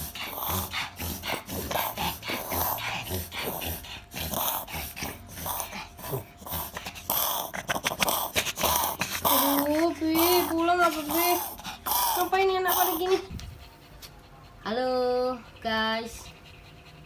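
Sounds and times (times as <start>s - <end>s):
small dog hacking cough: 0.2s - 12.9s.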